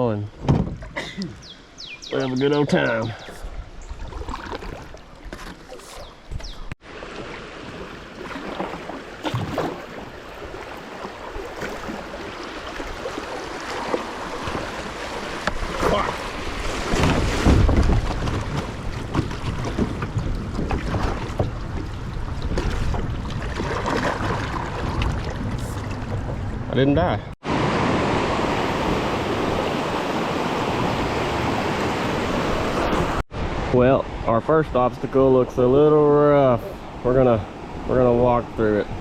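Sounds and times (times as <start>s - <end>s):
rushing water: 0.8s - 39.0s
water splashing: 3.1s - 26.8s
paddle strokes: 3.3s - 26.6s.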